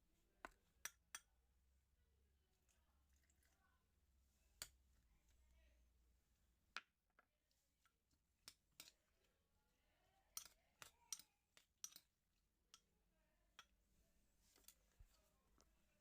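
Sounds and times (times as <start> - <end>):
kitchen clicks and taps: 10.4 - 12.1.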